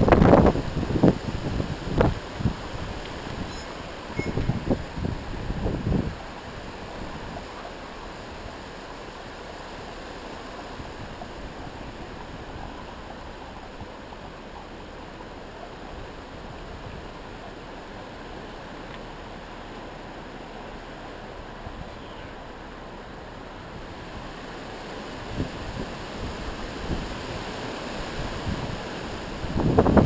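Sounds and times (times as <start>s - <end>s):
storm wind rushing: 0.0s - 7.5s, 25.2s - 30.0s
wind buffeting microphone: 0.0s - 18.8s, 23.4s - 30.0s.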